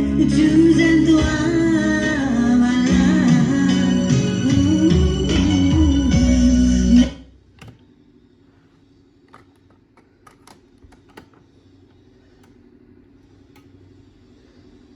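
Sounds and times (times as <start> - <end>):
song playing from radio tuner: 0.0 - 7.4.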